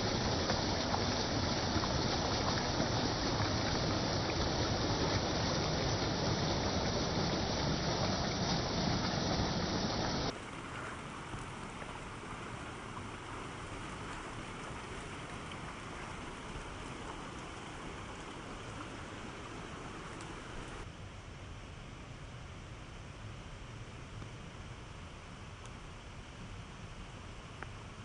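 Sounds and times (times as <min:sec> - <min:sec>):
hiss of falling water: 0:00.0 - 0:20.9
rushing water: 0:00.0 - 0:20.9.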